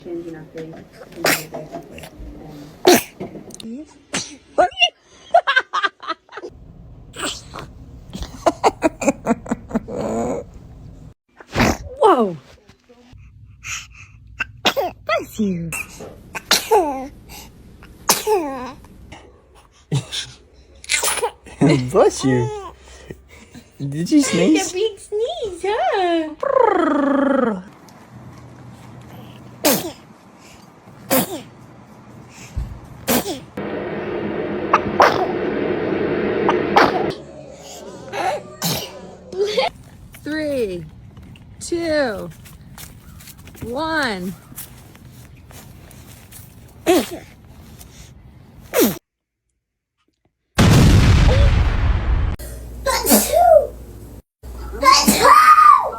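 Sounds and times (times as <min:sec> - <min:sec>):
baby sneezing: 0:01.2 - 0:01.6, 0:02.8 - 0:03.2, 0:04.1 - 0:04.5, 0:07.2 - 0:08.3, 0:14.4 - 0:17.1, 0:18.0 - 0:18.8, 0:20.0 - 0:21.4, 0:29.6 - 0:30.0, 0:31.0 - 0:31.5, 0:33.1 - 0:33.5, 0:38.6 - 0:39.1, 0:48.7 - 0:49.0, 0:52.9 - 0:53.7, 0:54.8 - 0:55.9
baby whining: 0:37.2 - 0:39.6.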